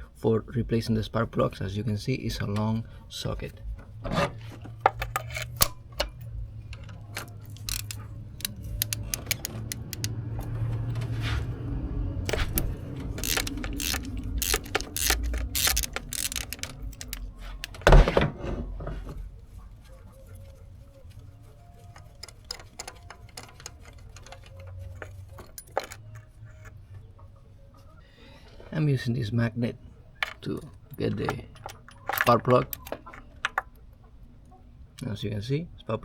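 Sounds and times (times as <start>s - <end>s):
metal tool clicks: 4.9s - 10.5s, 12.3s - 17.9s, 21.9s - 26.8s
ratchet clicking: 4.9s - 10.6s, 12.3s - 17.9s, 21.9s - 26.8s.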